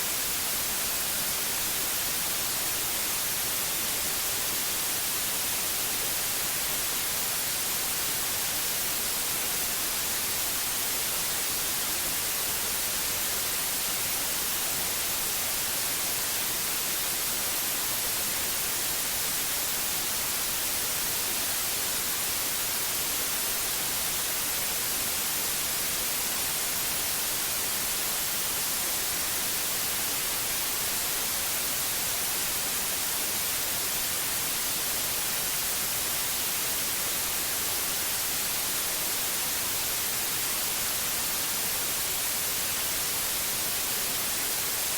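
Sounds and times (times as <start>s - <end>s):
steady white noise hiss: 0.0s - 44.9s.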